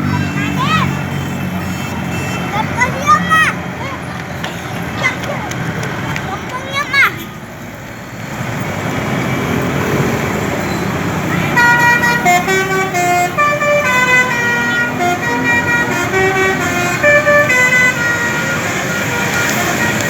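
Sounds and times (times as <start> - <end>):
multi-tone bus horn melody: 0.0 - 3.4, 11.4 - 20.0.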